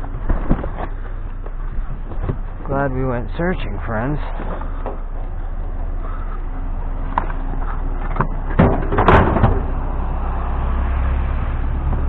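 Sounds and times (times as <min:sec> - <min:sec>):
low engine hum: 0:00.0 - 0:12.0
vehicle door shutting: 0:08.0 - 0:09.7.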